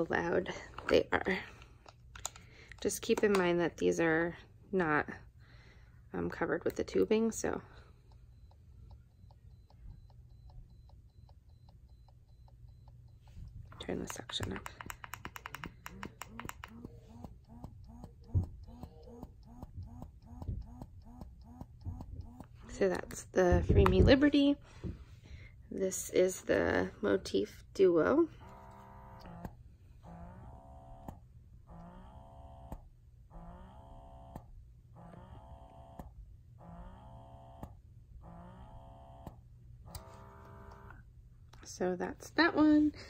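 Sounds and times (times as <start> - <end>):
breast pump motor pulsing: 13.8 - 23.1, 28.4 - 41.0.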